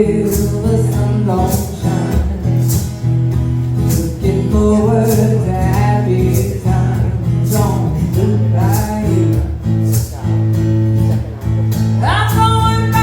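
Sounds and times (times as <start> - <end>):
acoustic guitar strumming: 0.0 - 13.0
person singing: 12.0 - 13.0.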